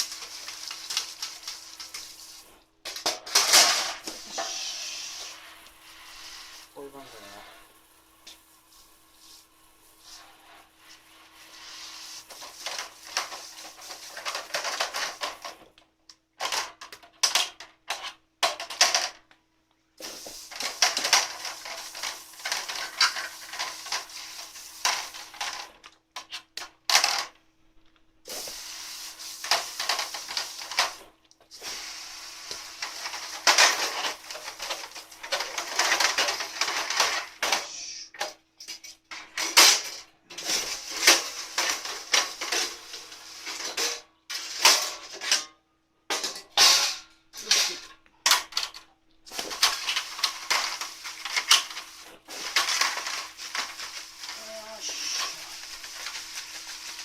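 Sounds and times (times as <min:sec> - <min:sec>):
water hissing: 0:00.0 - 0:02.6, 0:04.0 - 0:14.4, 0:20.0 - 0:25.4, 0:28.3 - 0:35.3, 0:49.3 - 0:57.0.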